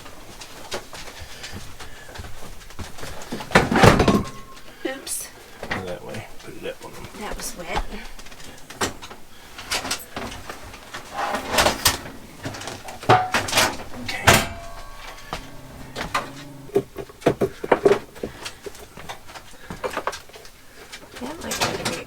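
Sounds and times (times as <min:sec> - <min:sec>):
knocks and clunks of handled metal: 0:02.8 - 0:04.7, 0:07.9 - 0:22.0.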